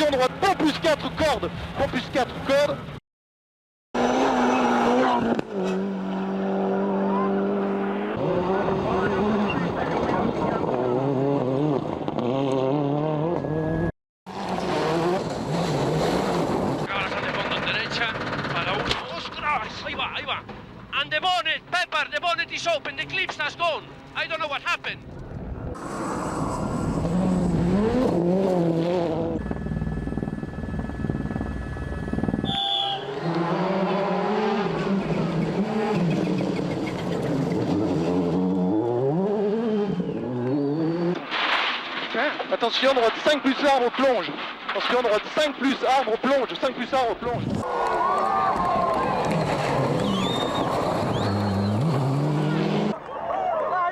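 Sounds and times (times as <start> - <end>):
rally car engine revving: 4.0 - 19.0, 25.8 - 30.4, 33.0 - 41.3, 49.1 - 53.0.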